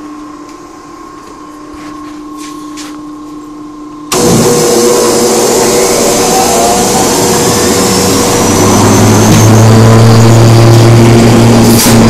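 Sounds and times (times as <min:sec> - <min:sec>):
steady hum: 0:00.0 - 0:12.0
industrial vacuum rush and whine: 0:04.0 - 0:12.0.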